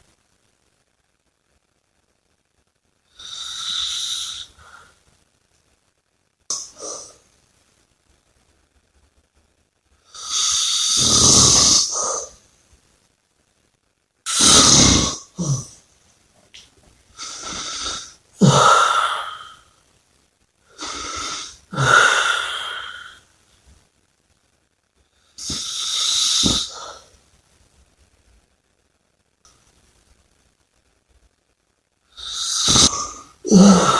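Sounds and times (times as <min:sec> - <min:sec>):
person snoring: 0:03.2 - 0:04.9, 0:06.5 - 0:07.2, 0:10.2 - 0:12.4, 0:14.3 - 0:15.8, 0:17.2 - 0:19.6, 0:20.8 - 0:23.2, 0:25.4 - 0:27.1, 0:32.2 - 0:33.9.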